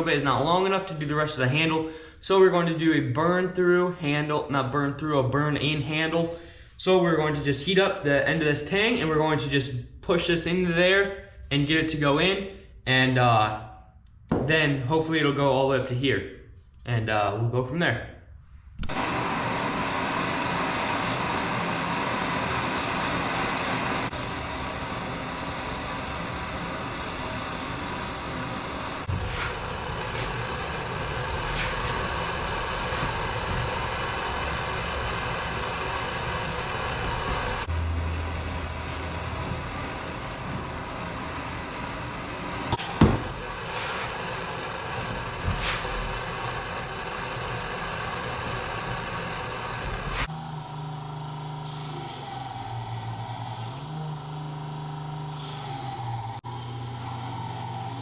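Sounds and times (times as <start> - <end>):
torch flame hissing: 18.8 - 58.0.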